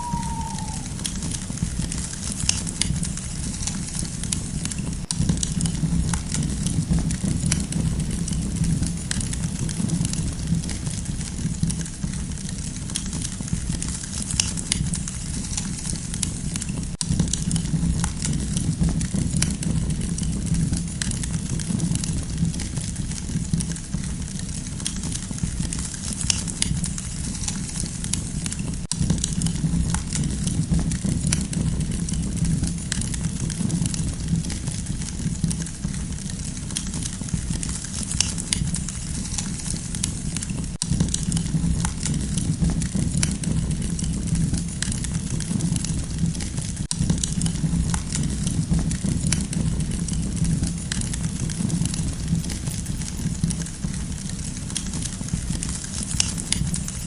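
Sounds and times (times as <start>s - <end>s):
campfire crackling and popping: 0.0s - 11.8s, 47.0s - 57.0s
steady low rumble: 47.0s - 57.0s.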